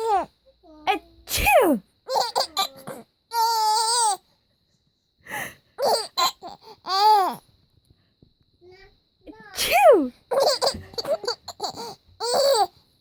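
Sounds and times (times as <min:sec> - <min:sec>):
woman sneezing: 0:01.3 - 0:01.8, 0:09.6 - 0:10.1
baby laughing: 0:02.1 - 0:04.2, 0:05.8 - 0:07.4, 0:09.9 - 0:12.7.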